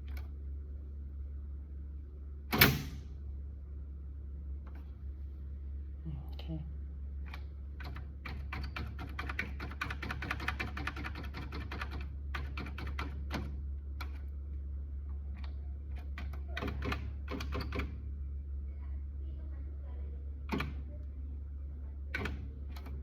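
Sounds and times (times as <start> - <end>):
steady low hum: 0.0 - 23.0
typewriter keys striking: 7.8 - 13.5.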